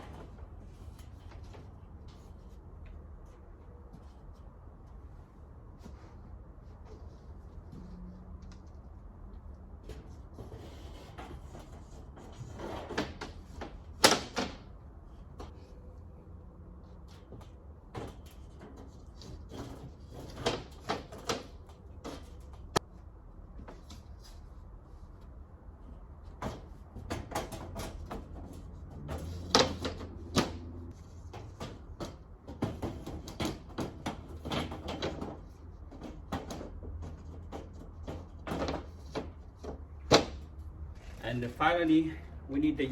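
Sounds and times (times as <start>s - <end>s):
shelving parts knocking and clattering: 26.2s - 40.6s.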